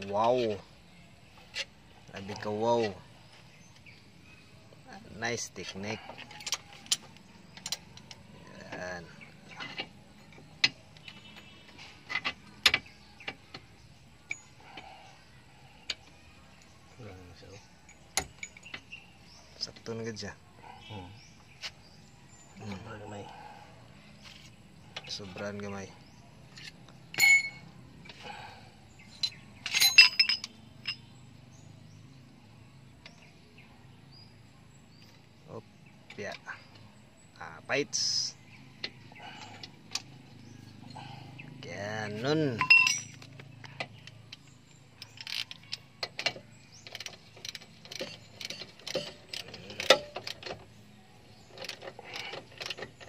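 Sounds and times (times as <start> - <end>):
hand tools clicking on metal: 45.0 - 50.6.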